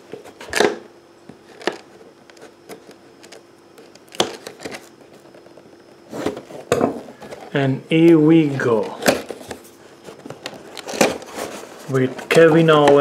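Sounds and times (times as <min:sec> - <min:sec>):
packaging snaps and scrapes: 0:01.4 - 0:07.6, 0:08.7 - 0:13.0.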